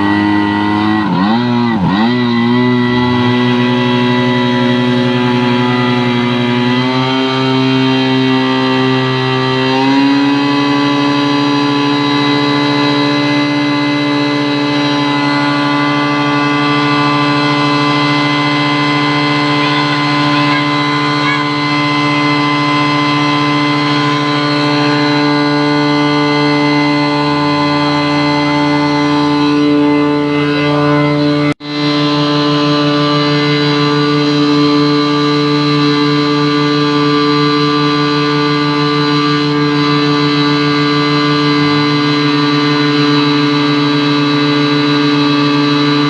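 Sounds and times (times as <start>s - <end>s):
fire pump engine running: 0.0s - 46.0s.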